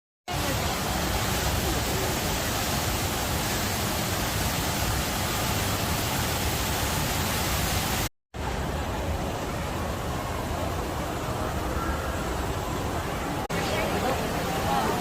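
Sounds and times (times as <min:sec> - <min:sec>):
waterfall roaring: 0:00.3 - 0:15.0.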